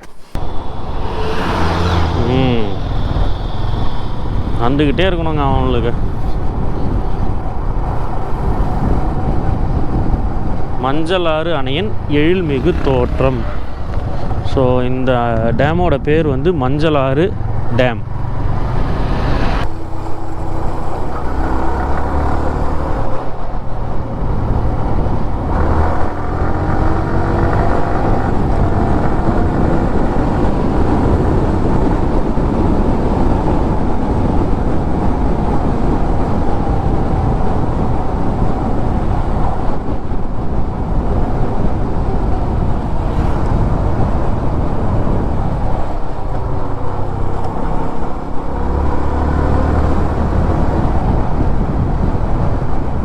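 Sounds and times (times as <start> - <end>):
vehicle engine running: 0.0 - 15.2, 17.1 - 29.7
road and wind noise: 0.0 - 53.0.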